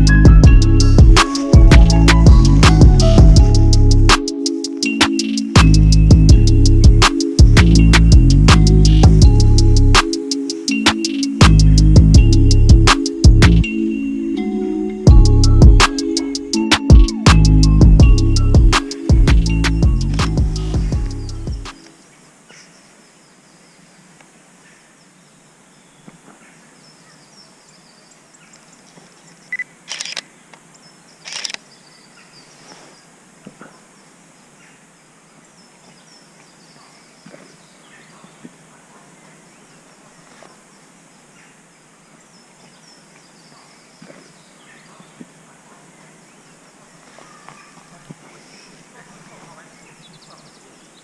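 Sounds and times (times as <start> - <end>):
background music: 0.0 - 21.9
faint distant birdsong: 0.0 - 51.0.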